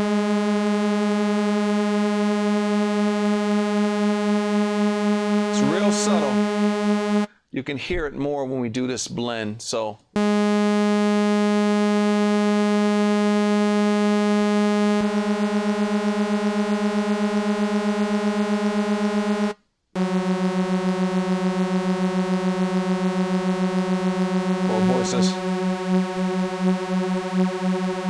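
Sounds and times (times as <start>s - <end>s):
sustained sawtooth synth note: 3.0s - 7.3s, 10.2s - 18.0s, 19.2s - 28.0s.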